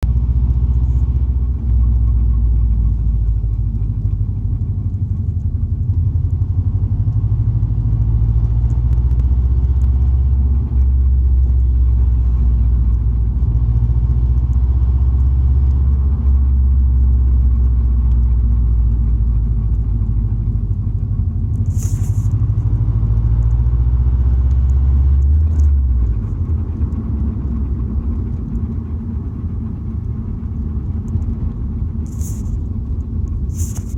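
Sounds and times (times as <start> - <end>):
car engine rumbling: 0.0 - 33.9
scraping grinding noise: 32.0 - 32.7.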